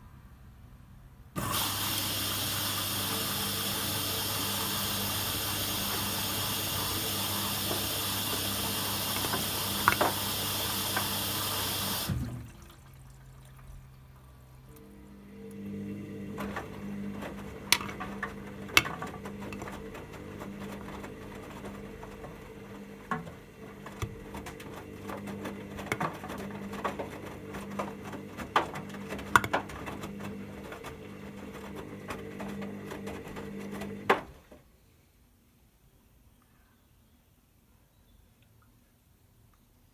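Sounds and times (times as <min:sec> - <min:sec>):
washing machine motor hum: 0:01.4 - 0:34.5
load knocking in drum: 0:07.6 - 0:11.2, 0:17.7 - 0:19.8, 0:28.6 - 0:29.8.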